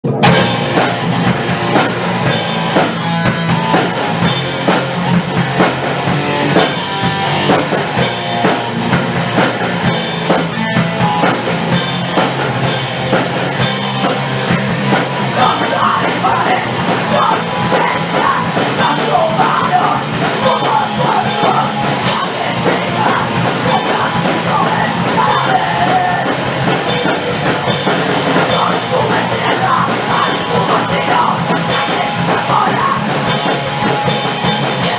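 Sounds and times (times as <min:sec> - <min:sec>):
punk band playing fast: 0:00.0 - 0:34.9.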